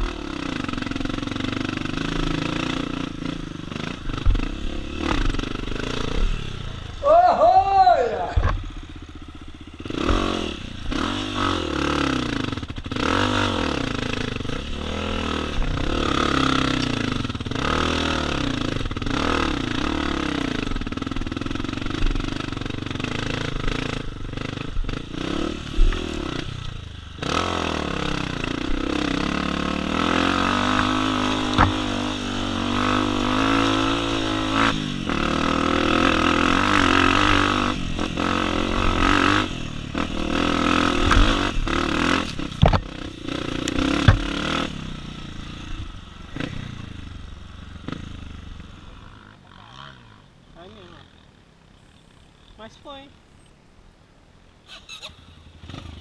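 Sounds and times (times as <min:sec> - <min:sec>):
dirt bike engine revving: 0:00.0 - 0:52.8, 0:54.9 - 0:56.0
sharp knocks: 0:31.5 - 0:32.0, 0:42.5 - 0:42.9, 0:44.0 - 0:44.5.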